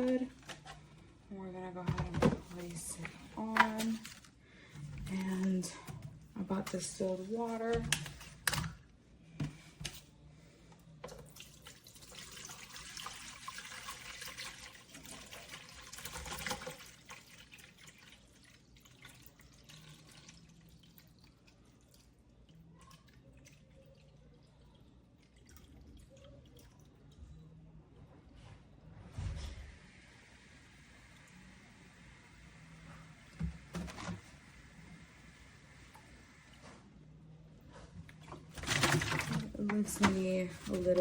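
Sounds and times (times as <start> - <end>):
handling sounds: 1.9 - 8.7
faint water drips: 10.7 - 27.7
water pouring into tank: 11.2 - 27.2, 38.4 - 39.7.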